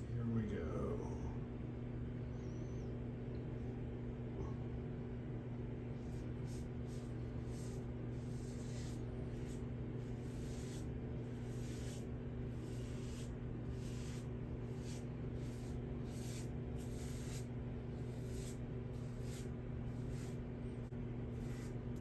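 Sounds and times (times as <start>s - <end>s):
steady low hum: 0.0s - 22.0s
razor scraping stubble: 6.0s - 22.0s.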